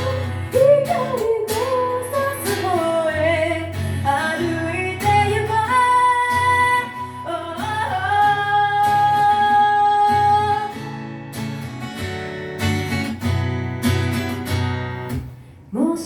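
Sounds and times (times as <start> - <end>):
woman singing: 0.0 - 10.9, 15.7 - 16.0
strummed acoustic guitar: 0.0 - 15.7.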